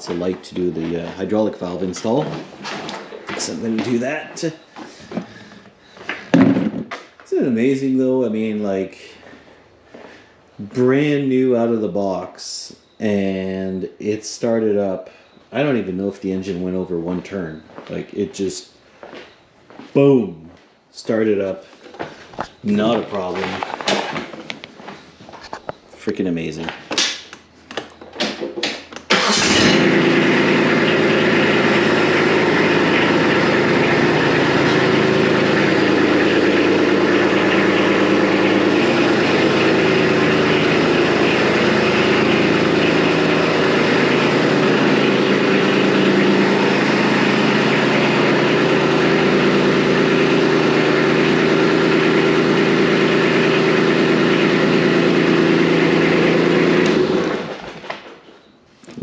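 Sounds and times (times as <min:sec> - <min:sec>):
diesel tractor engine idling: 0:29.1 - 0:57.4.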